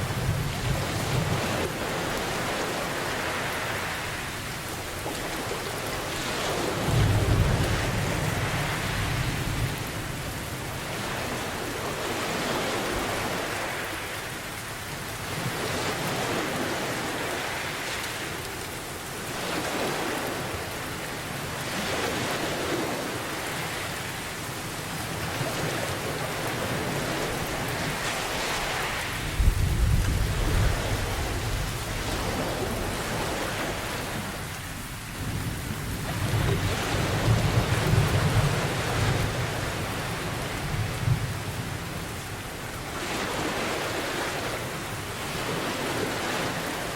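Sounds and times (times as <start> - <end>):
heavy rain: 0.0 - 46.9
ocean waves: 0.0 - 46.9
low thunder rumble: 29.2 - 32.9.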